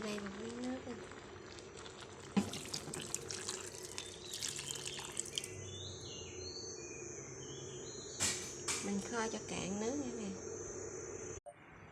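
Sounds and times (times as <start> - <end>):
water pouring into a pot: 0.0 - 5.6
faint chirping: 3.5 - 11.9.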